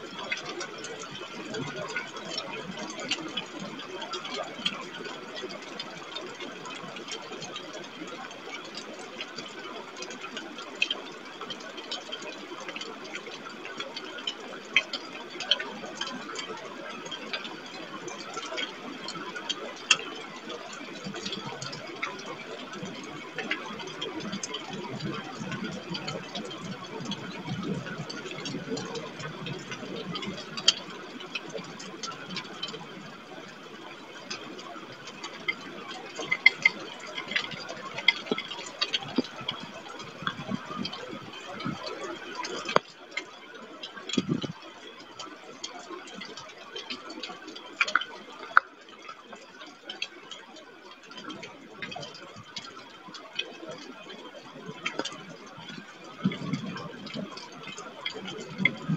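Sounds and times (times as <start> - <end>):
rain and wind hiss: 20.9 - 42.8.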